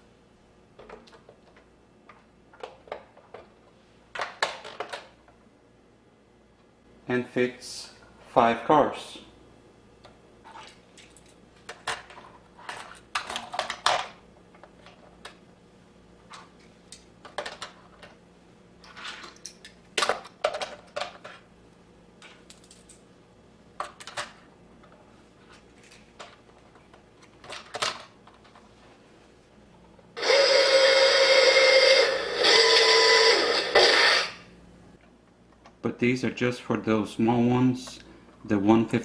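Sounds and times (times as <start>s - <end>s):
toys clicking and clacking: 30.2s - 34.4s.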